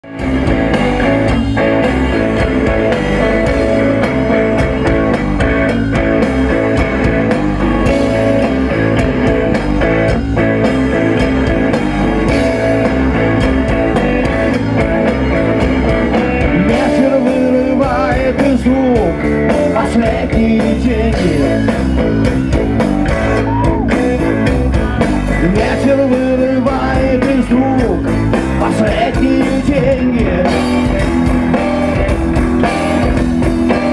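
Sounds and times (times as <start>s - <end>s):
guitar: 0.0s - 33.9s
rock band playing: 0.0s - 33.9s
person singing: 16.6s - 21.8s, 25.3s - 30.8s.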